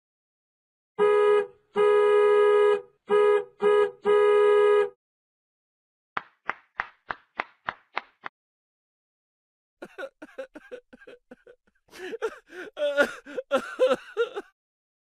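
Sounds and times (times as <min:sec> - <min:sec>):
horn blasts: 0:01.0 - 0:05.0.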